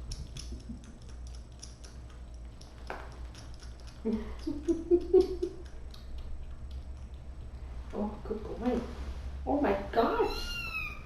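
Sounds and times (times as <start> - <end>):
kitten suckling wet clicks: 0.0 - 8.0.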